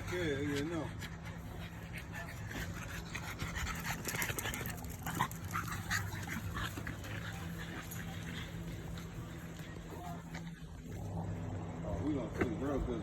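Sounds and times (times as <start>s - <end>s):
dog panting: 0.0s - 9.8s.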